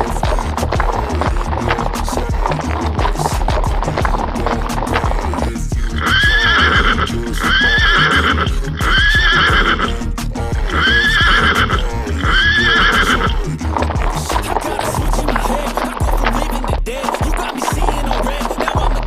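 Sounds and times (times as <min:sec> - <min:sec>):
children's music with steady beat: 0:00.0 - 0:19.0
horse whinnies: 0:05.9 - 0:10.0, 0:10.7 - 0:13.4.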